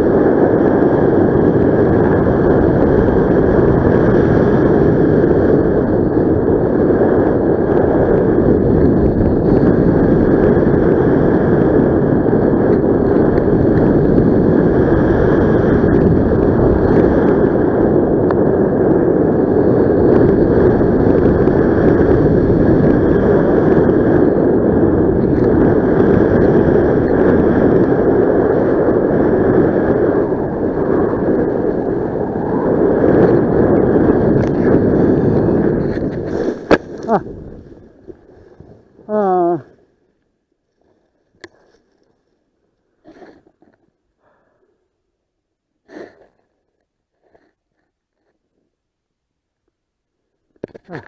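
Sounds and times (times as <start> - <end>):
wind rushing over microphone: 0.0 - 39.8.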